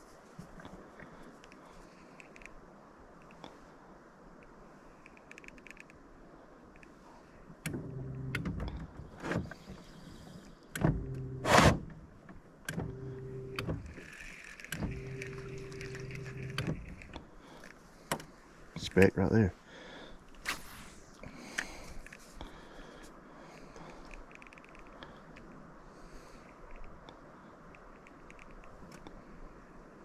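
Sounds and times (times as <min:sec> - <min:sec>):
electric trolling motor humming: 0:12.8 - 0:17.2.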